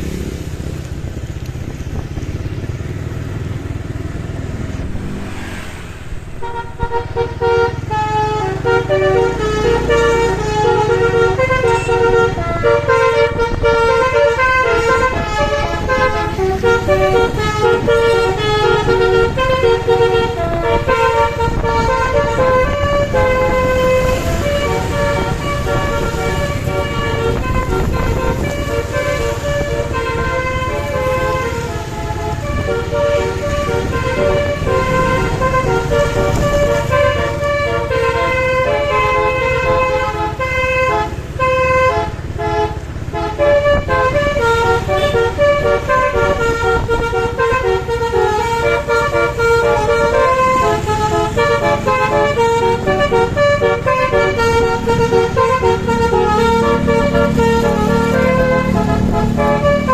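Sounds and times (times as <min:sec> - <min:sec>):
engine rumble: 0:00.0 - 0:59.9
multi-note bus horn melody: 0:03.8 - 0:59.9.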